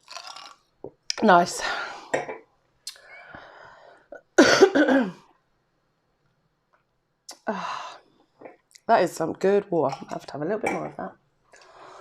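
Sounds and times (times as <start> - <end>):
breathy exhale: 3.0 - 4.1, 11.6 - 12.0
woman coughing: 4.4 - 5.2.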